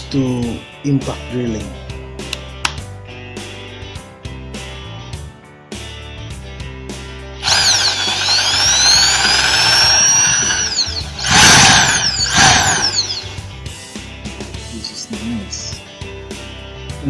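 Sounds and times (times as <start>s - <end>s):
background music: 0.0s - 17.0s
impact drill motor whining: 7.4s - 13.4s.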